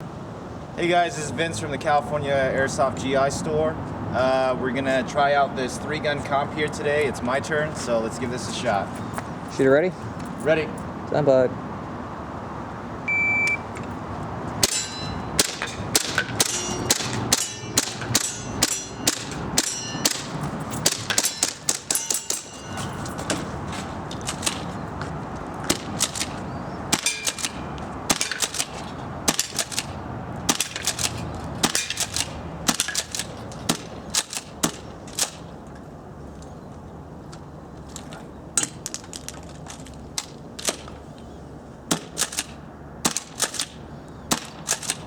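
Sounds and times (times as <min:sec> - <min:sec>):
shot timer beep: 0:13.1 - 0:13.7
airsoft guns firing: 0:14.6 - 0:22.5, 0:25.7 - 0:35.4, 0:41.9 - 0:45.0
pellets dinging on metal targets: 0:14.6 - 0:23.6, 0:25.7 - 0:35.4.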